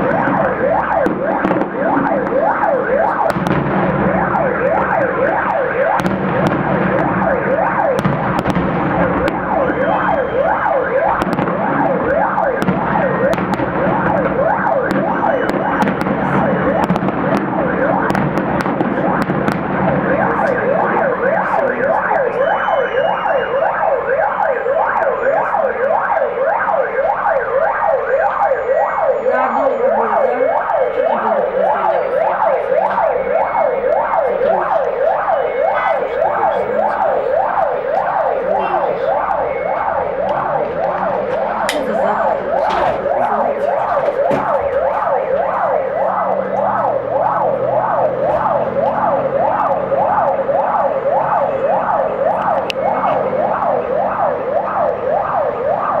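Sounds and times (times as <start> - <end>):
electronic sirens wailing: 0.0 - 56.0
fireworks pops and crackles: 8.0 - 10.1, 12.6 - 20.6.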